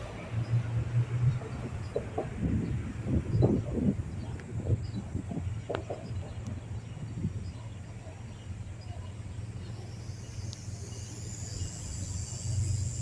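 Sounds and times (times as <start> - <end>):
diesel locomotive rumble: 0.0 - 13.0
high hiss: 9.9 - 13.0.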